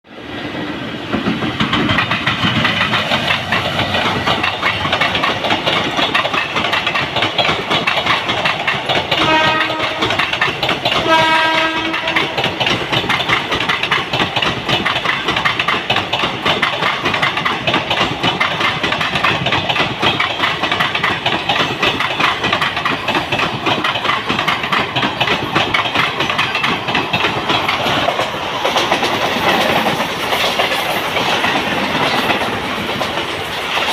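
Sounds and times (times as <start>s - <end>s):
train wheels clattering: 1.1s - 33.9s
train horn toots: 9.2s - 10.3s, 11.0s - 12.5s.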